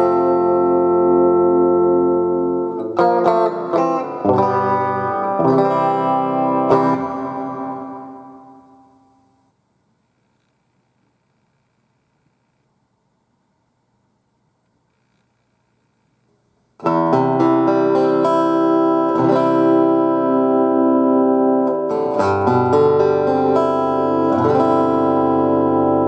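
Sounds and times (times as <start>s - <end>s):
guitar strummed chords: 0.0s - 9.3s, 16.8s - 26.0s.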